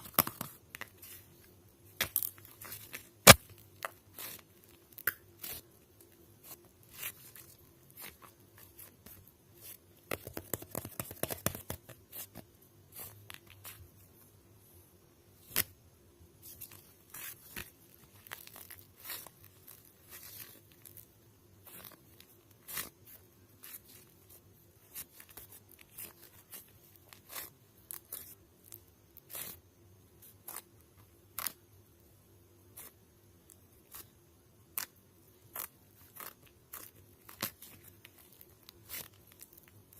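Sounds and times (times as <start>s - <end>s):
crackling and crinkling: 0.0s - 14.7s, 15.3s - 39.9s.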